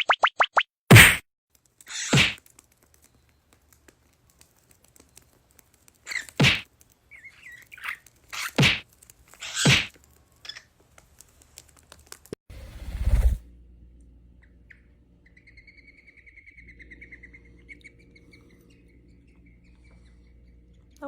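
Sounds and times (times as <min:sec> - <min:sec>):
swooping smacking sounds: 0:00.0 - 0:01.2, 0:01.9 - 0:03.0, 0:06.1 - 0:06.7, 0:07.8 - 0:10.0
pet bird chirping: 0:06.1 - 0:08.7, 0:09.4 - 0:10.7, 0:14.4 - 0:21.0.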